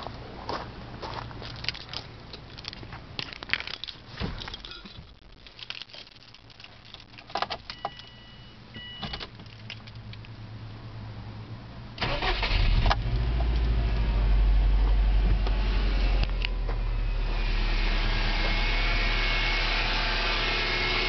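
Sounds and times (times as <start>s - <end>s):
car keys jangling: 1.5s - 10.4s.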